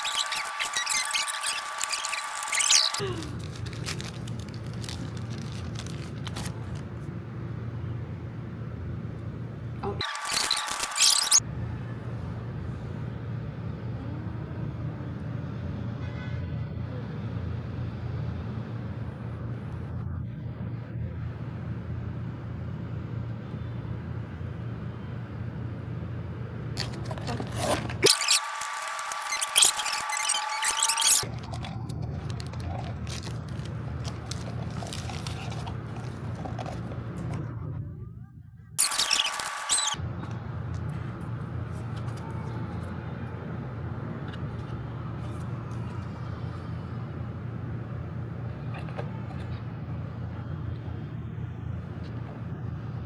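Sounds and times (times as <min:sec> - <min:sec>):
packaging clicks and scrapes: 0:00.0 - 0:07.1, 0:10.0 - 0:11.4, 0:26.8 - 0:37.4, 0:38.8 - 0:40.0
low rumbling hum: 0:00.0 - 0:15.8, 0:16.9 - 0:53.0.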